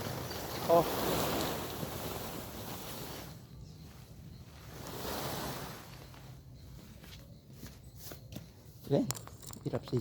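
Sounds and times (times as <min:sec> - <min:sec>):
sack dragged over ground: 0:00.0 - 0:06.4.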